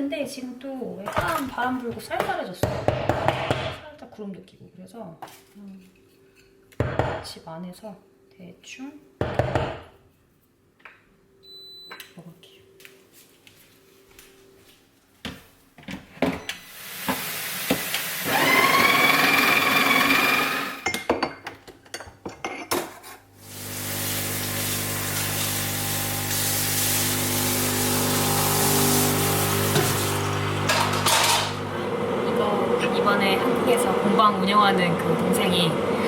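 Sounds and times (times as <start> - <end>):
steady humming buzz: 23.4 - 36.0.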